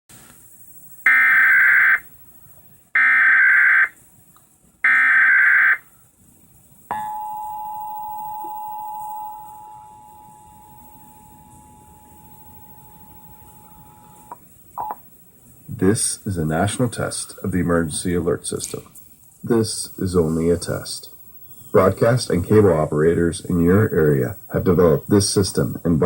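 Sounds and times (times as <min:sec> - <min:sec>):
digital data tones: 0:01.0 - 0:02.1, 0:03.0 - 0:04.0, 0:04.8 - 0:05.8
two-tone attention signal: 0:01.1 - 0:02.0, 0:03.0 - 0:03.9, 0:04.9 - 0:05.8, 0:06.9 - 0:15.0.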